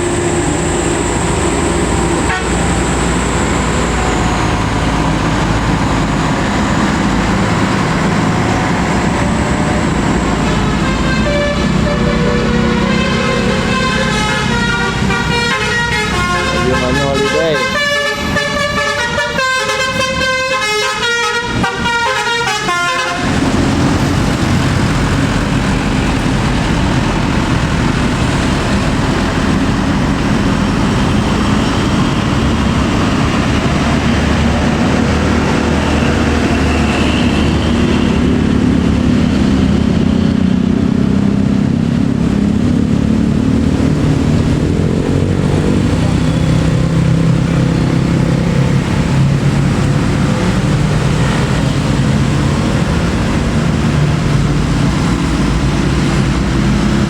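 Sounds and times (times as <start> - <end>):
heavy bus engine: 0.0 - 57.0
road noise: 0.0 - 57.0
musical bus air horn tune: 2.2 - 3.0, 10.5 - 23.5.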